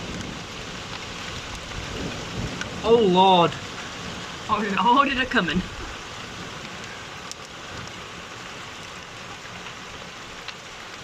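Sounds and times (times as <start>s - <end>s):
hail ticking: 0.0s - 11.0s
heavy rain: 0.0s - 11.0s.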